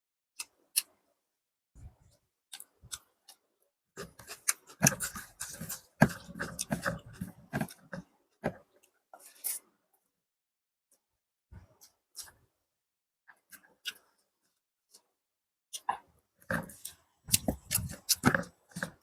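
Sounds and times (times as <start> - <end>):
wet chewing and mouth smacks: 4.0 - 7.9, 16.6 - 19.0.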